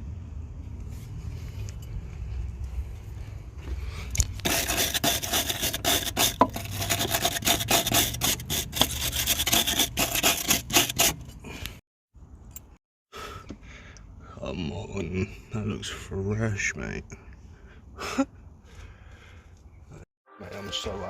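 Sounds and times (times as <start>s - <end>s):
rasping strokes on car body metal: 4.4s - 11.3s.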